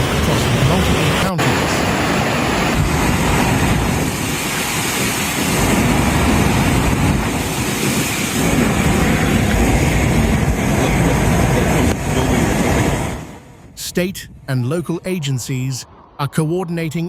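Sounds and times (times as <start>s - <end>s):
floodwater rushing: 0.0s - 13.4s.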